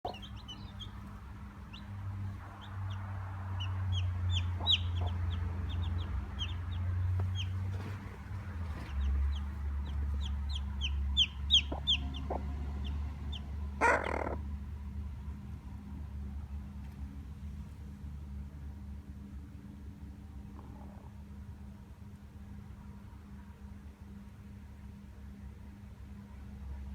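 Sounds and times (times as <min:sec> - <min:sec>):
hen alarm call: 0:00.0 - 0:01.0, 0:01.7 - 0:07.6, 0:10.2 - 0:14.4
chicks peeping: 0:00.0 - 0:14.4
steady low hum: 0:00.0 - 0:26.9.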